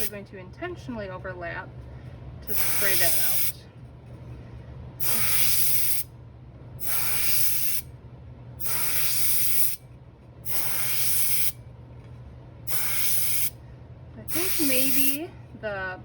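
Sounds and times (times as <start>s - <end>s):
steady low hum: 0.0s - 16.0s
airbrush spraying hiss: 2.5s - 3.6s, 5.0s - 6.1s, 6.8s - 7.9s, 8.6s - 9.8s, 10.5s - 11.6s, 12.7s - 13.6s, 14.3s - 15.2s.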